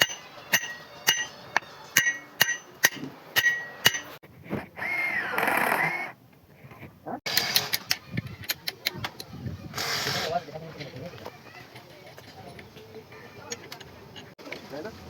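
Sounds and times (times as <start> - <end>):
hammer clanging on steel: 0.0 - 4.2.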